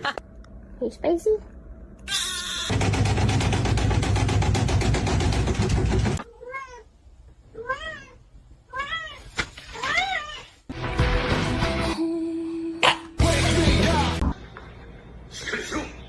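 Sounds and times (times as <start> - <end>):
cat meowing: 6.2 - 6.9, 7.6 - 10.6.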